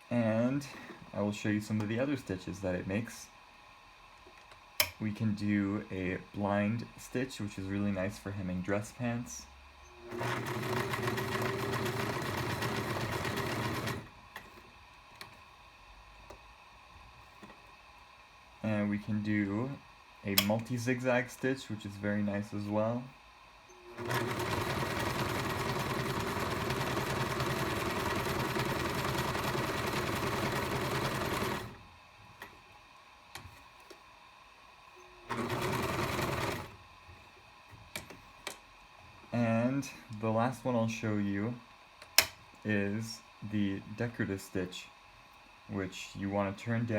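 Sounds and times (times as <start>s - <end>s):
sewing machine running: 10.0s - 14.1s, 23.9s - 31.8s, 35.3s - 36.8s.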